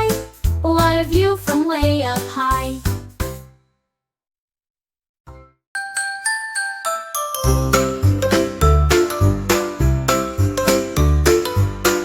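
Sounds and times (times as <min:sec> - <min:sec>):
chiming bell-like melody: 0:05.8 - 0:11.6.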